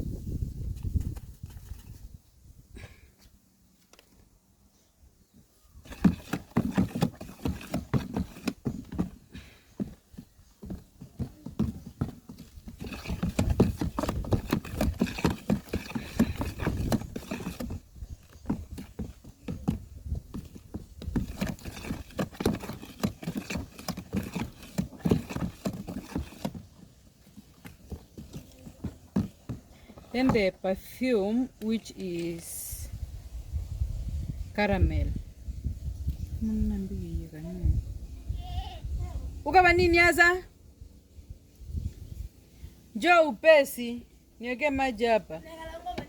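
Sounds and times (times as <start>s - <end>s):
utensil stirring thick mixture: 5.8s - 9.2s, 11.5s - 29.3s.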